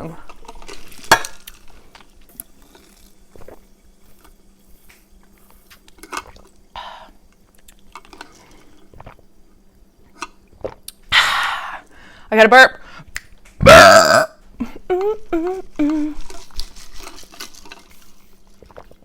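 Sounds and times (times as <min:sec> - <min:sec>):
person drinking and swallowing: 0:00.2 - 0:04.4, 0:05.1 - 0:09.4, 0:10.0 - 0:11.8, 0:13.2 - 0:16.6, 0:17.8 - 0:19.0.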